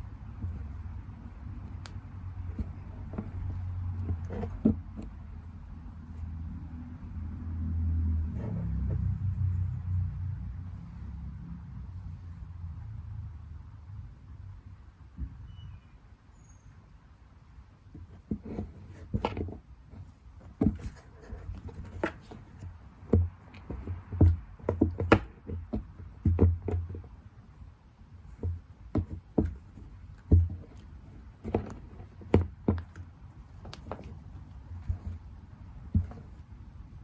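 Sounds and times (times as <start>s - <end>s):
cat knocking on cardboard box: 2.5s - 5.2s, 20.4s - 27.1s, 28.3s - 30.8s, 31.4s - 32.9s, 35.8s - 36.4s.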